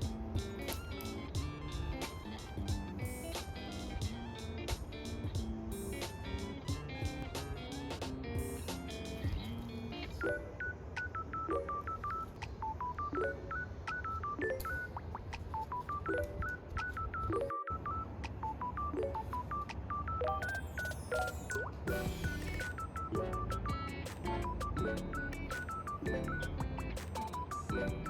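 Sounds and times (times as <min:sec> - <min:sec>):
beep-like electronic melody: 0:10.2 - 0:28.0.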